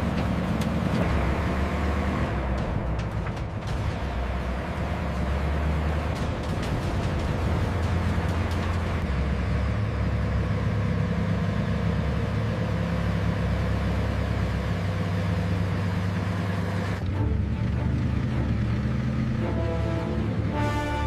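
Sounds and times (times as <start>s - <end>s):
tank running gear noise: 0.0s - 10.6s
tank engine droning: 0.0s - 21.0s.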